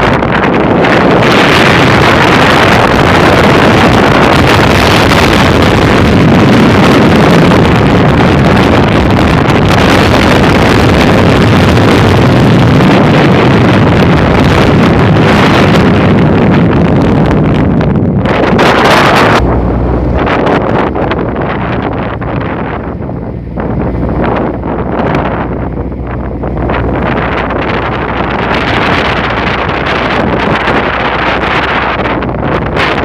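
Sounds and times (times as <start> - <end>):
boat engine running: 0.0 - 33.0
strong wind on microphone: 0.0 - 33.0
water rushing past: 18.2 - 33.0.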